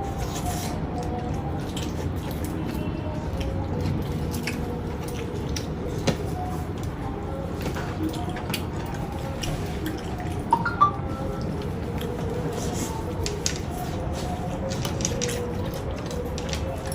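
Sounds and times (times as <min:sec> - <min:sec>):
person chewing with wet clicks: 0:00.0 - 0:16.9.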